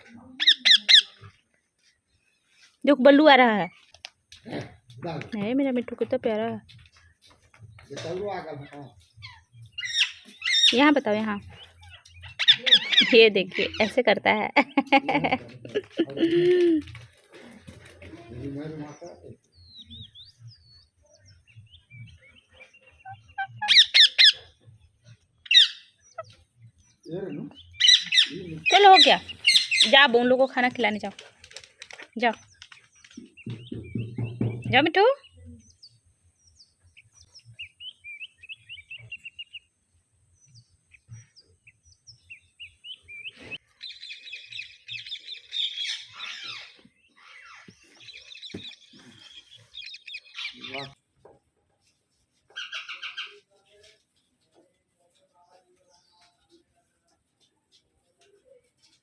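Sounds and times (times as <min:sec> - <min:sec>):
parrot chirping: 0:00.4 - 0:01.2, 0:09.2 - 0:10.9, 0:12.2 - 0:13.8, 0:22.2 - 0:24.5, 0:25.4 - 0:26.4, 0:27.6 - 0:30.1
parrot screeching: 0:23.3 - 0:24.3.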